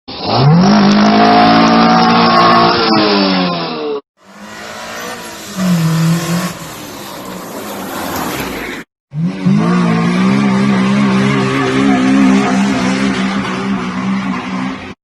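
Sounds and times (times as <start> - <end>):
car engine revving: 0.1 - 15.0.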